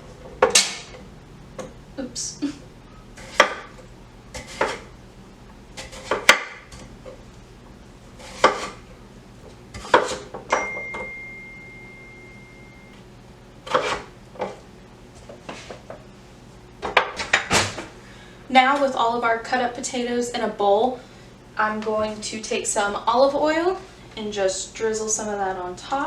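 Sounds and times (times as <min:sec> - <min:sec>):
metal ringing high tone: 0:10.5 - 0:13.0.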